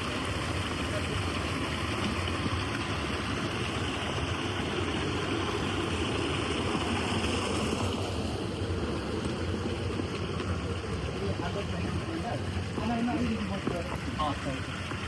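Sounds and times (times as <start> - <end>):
flowing water rushing: 0.0 - 15.0.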